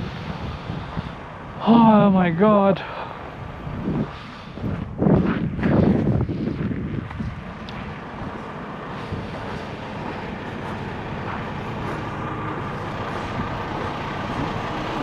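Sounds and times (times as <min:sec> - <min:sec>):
vehicle engines idling: 0:00.0 - 0:15.0.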